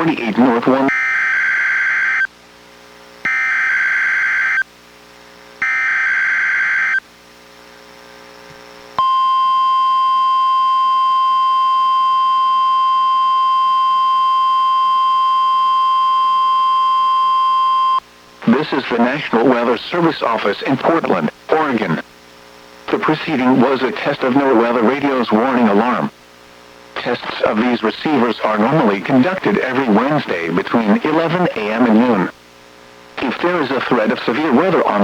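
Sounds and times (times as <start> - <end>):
steady warning alarm tone: 0.8 - 2.3, 3.2 - 4.7, 5.6 - 7.0, 9.0 - 18.0.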